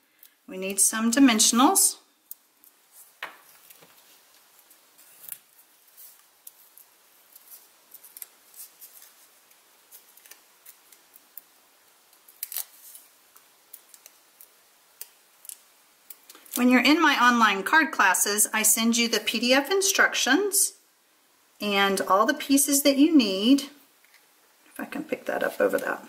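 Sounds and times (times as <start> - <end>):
paper rustling: 2.8 - 11.5, 12.2 - 14.3.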